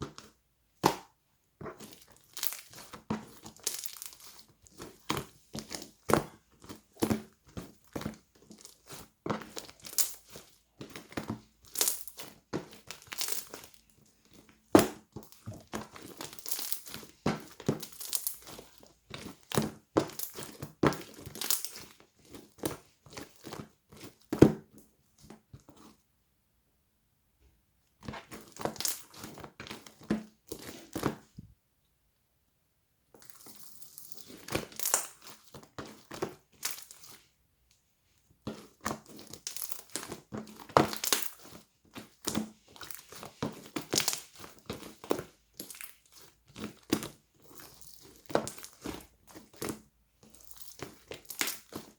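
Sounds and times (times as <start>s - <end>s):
wrapping material crinkling: 15.2s - 24.2s, 38.6s - 51.9s.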